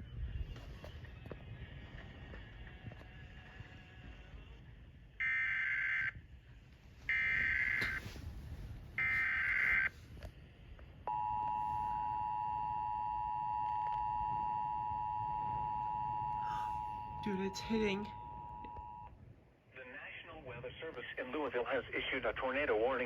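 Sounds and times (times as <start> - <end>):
two-tone attention signal: 11.1 - 19.1
warbling data tones: 11.1 - 19.1.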